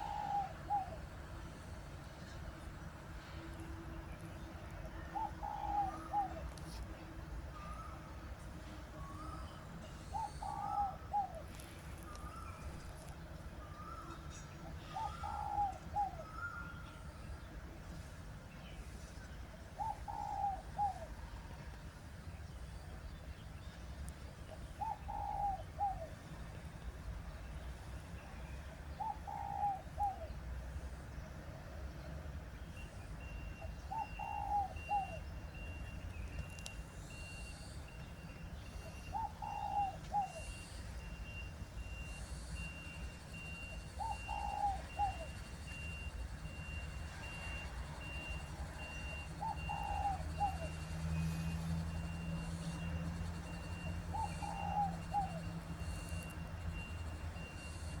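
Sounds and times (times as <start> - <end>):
dove cooing: 0.0 - 1.2, 5.0 - 6.5, 9.0 - 12.8, 13.7 - 16.8, 19.8 - 21.3, 24.6 - 26.3, 28.9 - 30.4, 33.6 - 35.3, 38.8 - 58.0.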